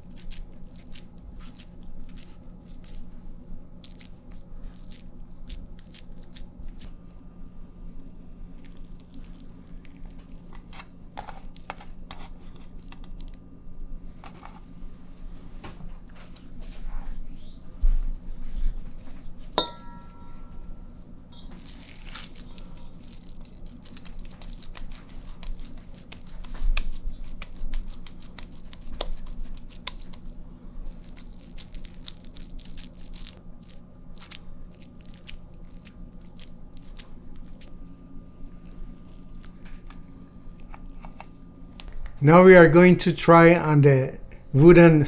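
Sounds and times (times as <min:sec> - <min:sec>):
aluminium foil crinkling: 0:00.0 - 0:14.7, 0:21.4 - 0:41.1
steady low hum: 0:00.0 - 0:45.0.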